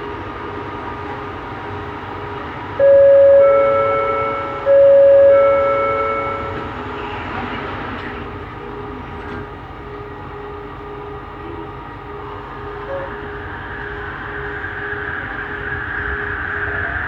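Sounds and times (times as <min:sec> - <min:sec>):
train running rumble: 0:00.0 - 0:17.0
train whine: 0:00.0 - 0:17.0
faint intermittent hum: 0:02.8 - 0:06.8.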